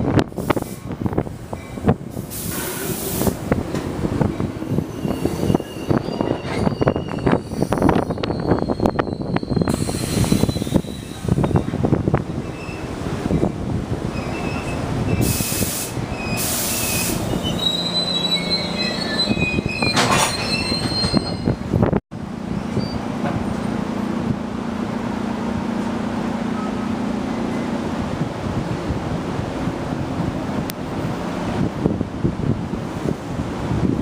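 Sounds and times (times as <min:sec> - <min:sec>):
train wheels rumbling: 0:00.0 - 0:34.0
high wheel squeal: 0:04.2 - 0:11.8, 0:12.4 - 0:21.8.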